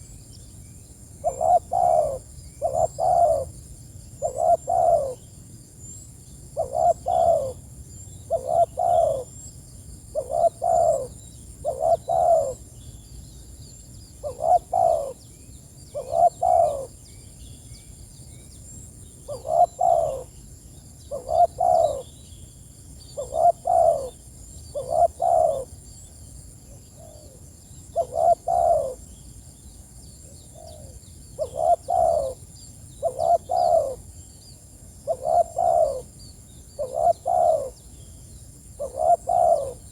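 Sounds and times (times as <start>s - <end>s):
dove cooing: 1.2s - 3.5s, 4.2s - 5.2s, 6.6s - 7.6s, 8.3s - 9.3s, 10.1s - 12.6s, 14.2s - 15.2s, 15.9s - 17.0s, 19.3s - 20.3s, 21.1s - 22.1s, 23.2s - 25.7s, 27.0s - 29.0s, 30.5s - 32.4s, 33.0s - 34.0s, 35.0s - 36.1s, 36.8s - 37.8s, 38.8s - 39.9s.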